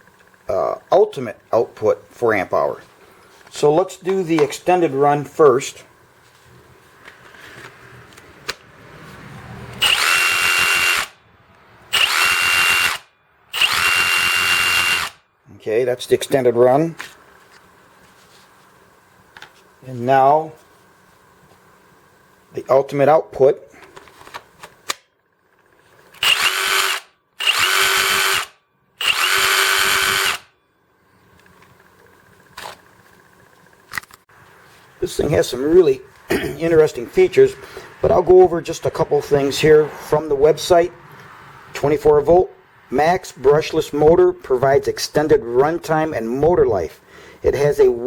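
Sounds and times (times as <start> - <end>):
jigsaw motor whining: 9.7 - 11.2, 11.9 - 15.2, 26.2 - 30.5.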